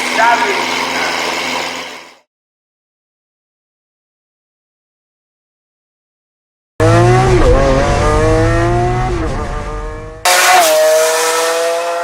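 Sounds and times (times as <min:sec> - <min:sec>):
loud car engine revving: 0:00.0 - 0:02.1, 0:06.8 - 0:12.0.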